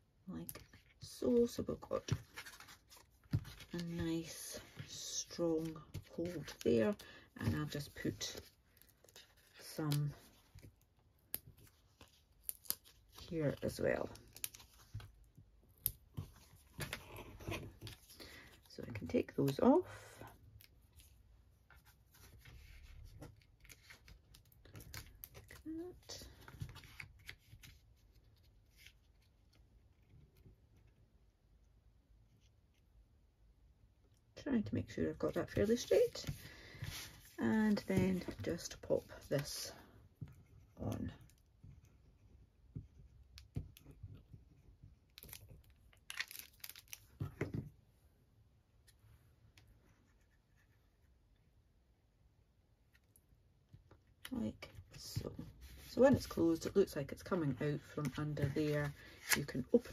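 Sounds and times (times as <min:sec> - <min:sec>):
cardstock being handled: 0:55.0 - 0:59.9.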